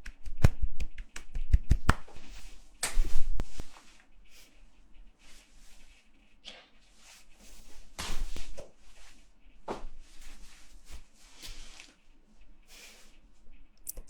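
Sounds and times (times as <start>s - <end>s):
hands clapping and slapping: 0.0s - 2.2s, 2.8s - 3.1s.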